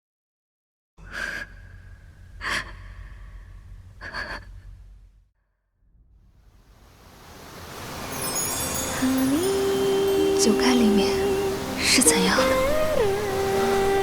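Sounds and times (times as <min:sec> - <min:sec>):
low rumble: 0:01.1 - 0:07.8
hiss: 0:06.6 - 0:10.5.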